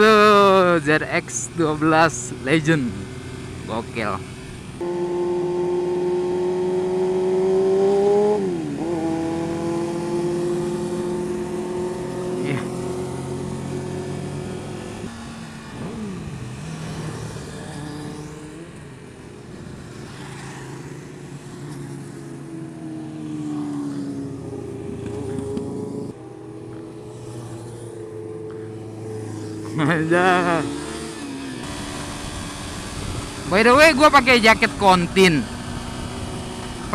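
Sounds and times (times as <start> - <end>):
motorcycle engine at high revs: 0.0 - 36.9.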